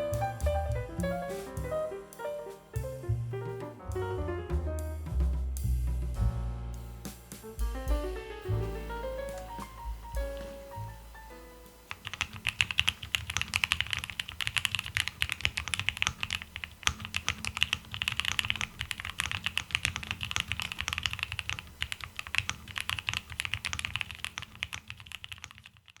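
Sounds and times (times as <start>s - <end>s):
mechanical keyboard typing: 11.9s - 26.0s.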